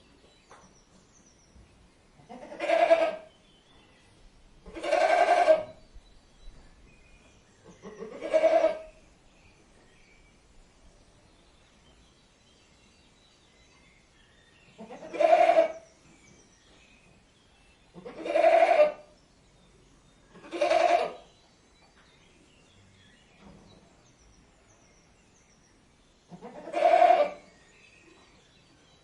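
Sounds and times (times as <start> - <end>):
goat bleating: 2.3 - 3.3, 4.8 - 5.7, 7.8 - 8.9, 14.8 - 15.8, 18.0 - 19.0, 20.4 - 21.2, 26.3 - 27.4.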